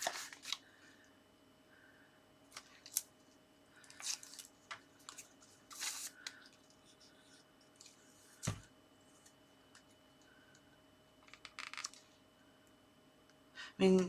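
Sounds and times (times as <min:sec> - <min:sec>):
paper rustling: 0:00.0 - 0:00.6, 0:03.8 - 0:09.3.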